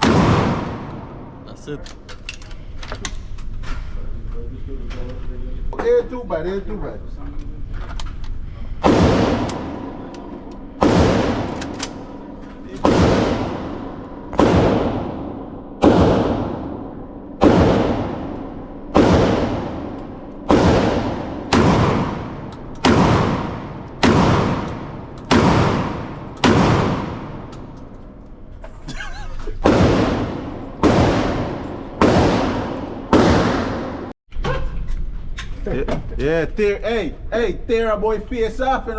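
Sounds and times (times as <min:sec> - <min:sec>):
gunshots with echoing tail: 0:00.0 - 0:01.5, 0:08.8 - 0:27.8, 0:29.6 - 0:34.2.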